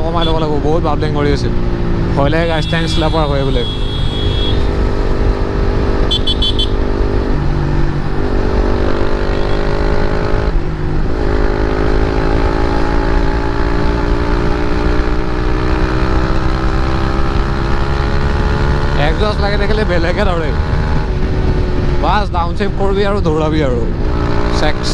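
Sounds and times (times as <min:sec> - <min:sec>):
motorcycle engine accelerating: 0:00.0 - 0:22.1
wind rumble on microphone: 0:17.2 - 0:24.5.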